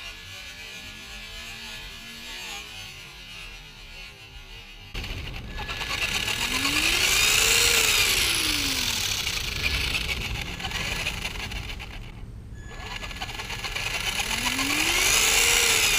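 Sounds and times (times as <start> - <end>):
electric motor whine: 0.0 - 15.9.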